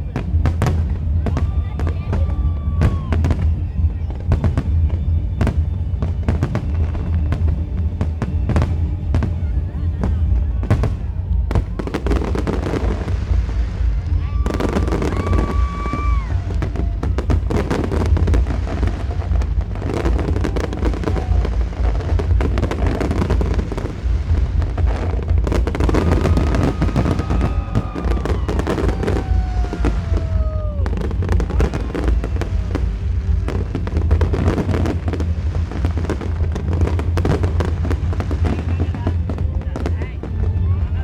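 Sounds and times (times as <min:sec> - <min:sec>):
fireworks crackling and banging: 0:00.0 - 0:41.0
low rumble: 0:00.0 - 0:41.0.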